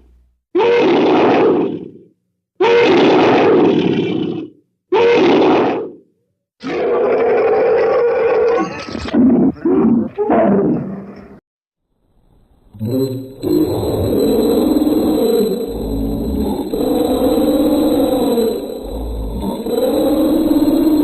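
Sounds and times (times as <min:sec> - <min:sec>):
grunting roaring animal calls: 0:12.7 - 0:21.0.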